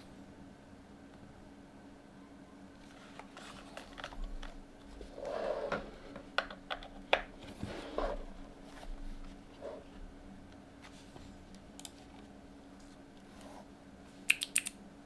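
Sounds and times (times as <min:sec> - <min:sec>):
mechanical keyboard keystrokes: 0:14.3 - 0:14.8.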